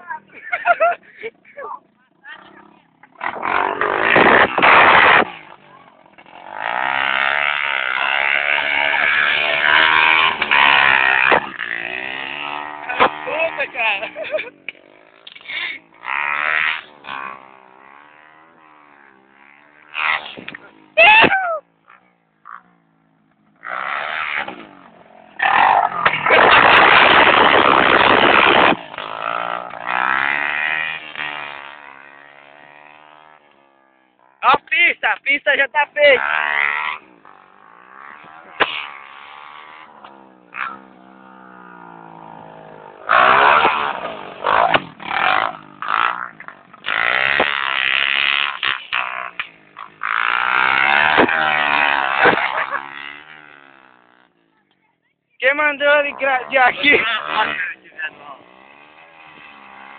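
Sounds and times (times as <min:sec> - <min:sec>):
small motorcycle engine revving: 0:00.0 - 0:54.7, 0:55.4 - 0:59.9.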